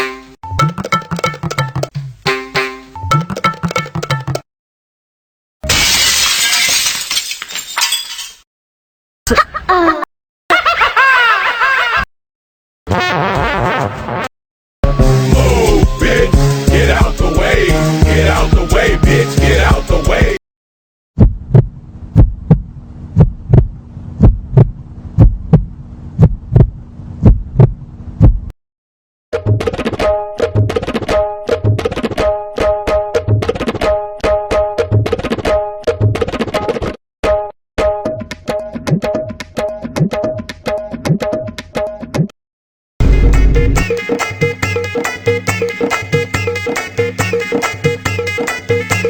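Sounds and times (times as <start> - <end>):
glass shattering: 5.6 - 8.4
heartbeat thumps: 21.2 - 28.5
steady low hum: 21.2 - 28.5.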